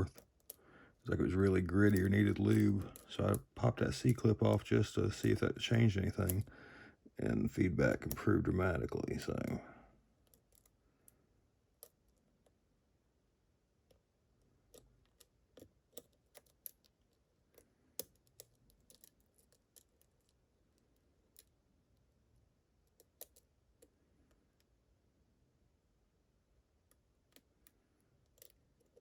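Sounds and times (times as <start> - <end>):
lock pick clicks and ticks: 14.7 - 21.5, 22.9 - 23.9, 27.3 - 29.0.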